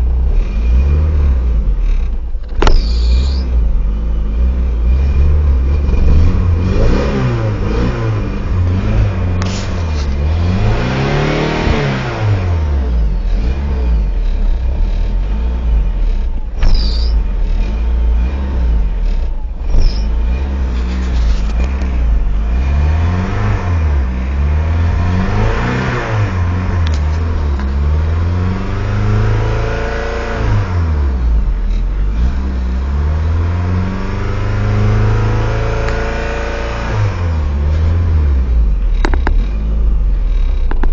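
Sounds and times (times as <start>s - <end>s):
high squeaks with clicks: 2.4s - 3.6s, 16.6s - 17.2s, 19.6s - 21.9s
car engine idling roughly: 12.8s - 22.5s, 38.6s - 40.9s.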